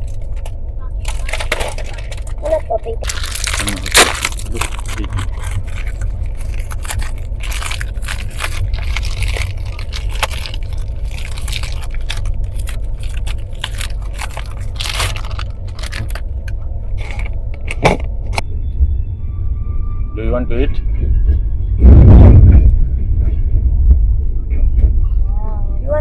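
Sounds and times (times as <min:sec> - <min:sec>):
moving train rumble: 0:00.0 - 0:26.0
food packet crackling: 0:01.0 - 0:17.6.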